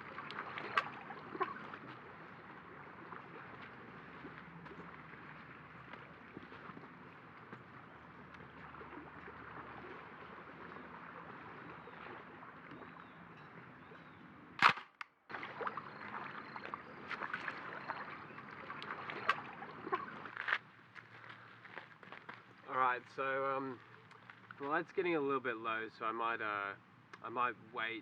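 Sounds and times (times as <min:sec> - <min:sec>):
loud sharp click: 0:14.6 - 0:15.1
outdoor background hiss: 0:20.3 - 0:28.0.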